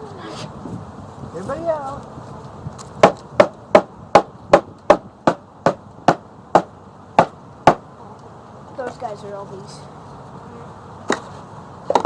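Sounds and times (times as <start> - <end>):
sharp knocks on a cage: 3.0 - 7.8.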